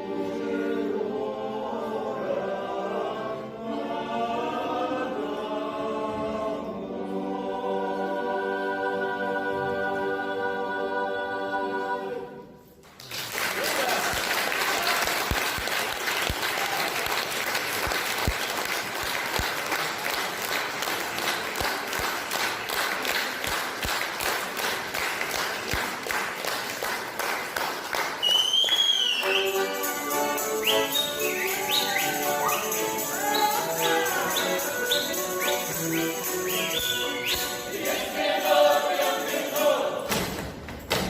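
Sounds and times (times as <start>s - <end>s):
audience applauding: 12.8s - 38.0s
music with singing: 29.2s - 40.1s.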